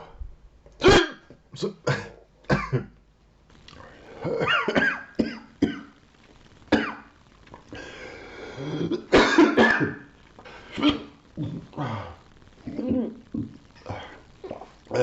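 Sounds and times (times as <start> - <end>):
man coughing: 1.9 - 2.9, 4.2 - 5.8, 8.8 - 10.0.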